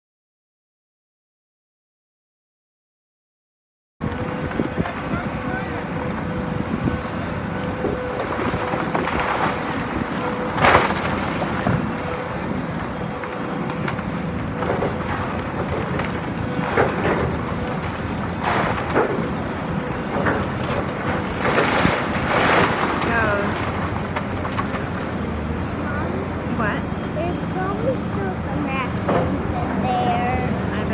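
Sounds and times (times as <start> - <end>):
heavy machinery running: 4.0 - 30.9
masonry crashing and crunching: 4.8 - 25.3.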